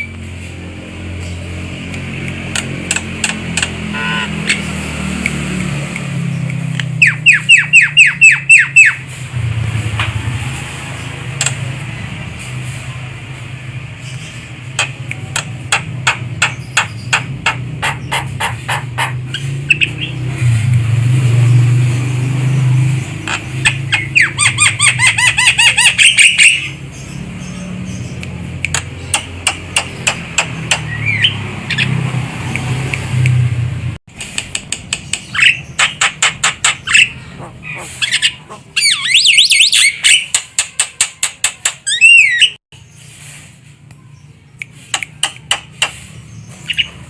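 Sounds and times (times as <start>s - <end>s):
bird sharp clicks: 1.8s - 3.8s, 11.4s - 11.6s, 14.1s - 19.1s, 28.1s - 33.4s, 44.6s - 46.9s
bird harsh chattering: 2.6s - 4.7s, 14.0s - 20.2s, 23.2s - 32.0s, 35.0s - 41.0s.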